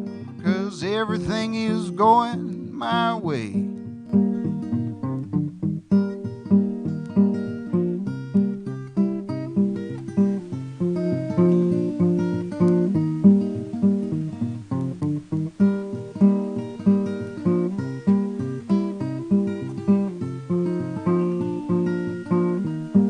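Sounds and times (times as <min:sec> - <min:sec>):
acoustic guitar picking: 0:00.0 - 0:23.0.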